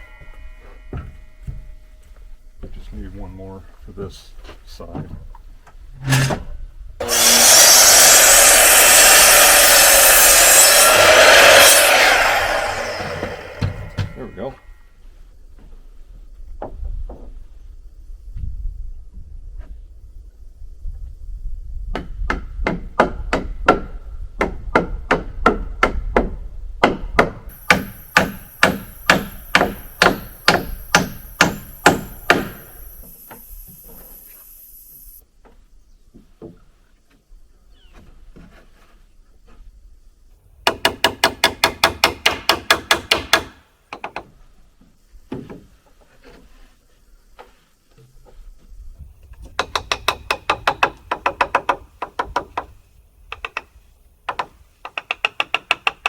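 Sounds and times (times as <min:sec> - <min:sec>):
hammer driving nails into wood: 0:24.4 - 0:33.4, 0:40.6 - 0:44.2
rapid ringing hammer strikes: 0:27.7 - 0:33.4.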